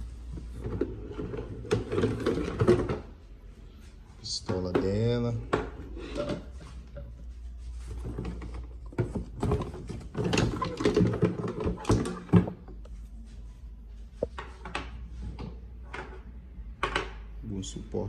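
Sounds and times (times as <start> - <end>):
plastic parts knocking and clattering: 0.3 - 3.2, 7.9 - 12.9, 14.2 - 17.3.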